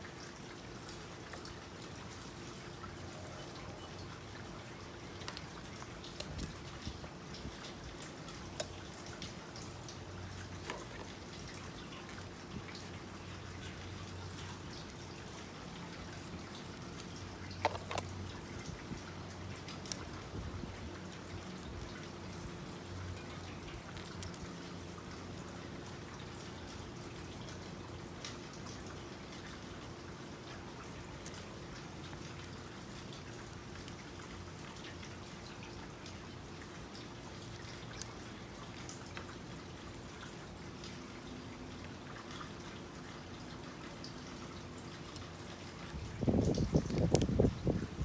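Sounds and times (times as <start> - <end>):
drip-like sounds: 0.0 - 48.0
light ticks: 45.1 - 47.4.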